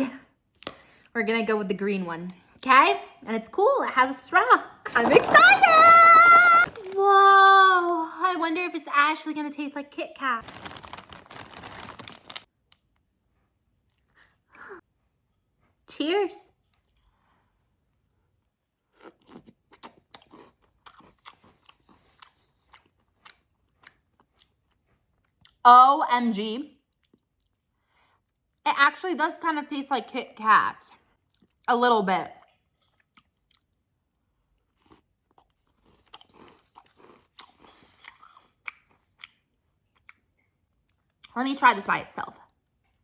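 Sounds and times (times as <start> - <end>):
person chewing crunchy cereal: 4.9 - 7.2, 10.4 - 12.5, 18.9 - 25.6, 32.4 - 41.3.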